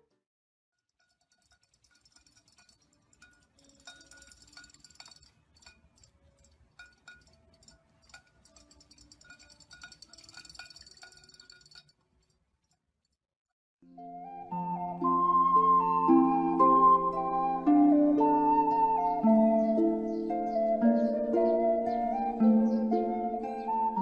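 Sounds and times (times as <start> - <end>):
faint sparse music: 1.0 - 12.4, 13.8 - 24.0
light clicks and clinks: 1.0 - 12.8.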